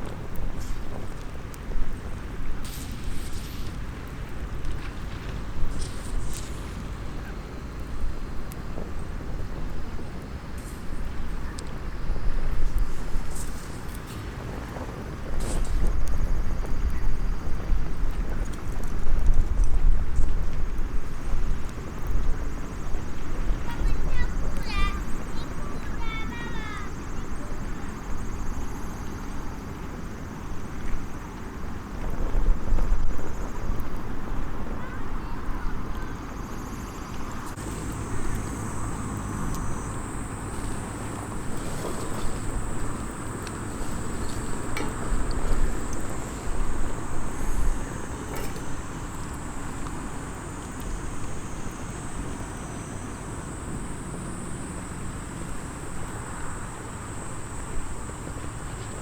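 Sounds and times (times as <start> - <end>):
wood fire crackling: 0.0 - 26.8, 37.1 - 59.0
low outdoor rumble in gusts: 0.0 - 59.0
high insect trill: 22.5 - 31.3, 34.8 - 59.0.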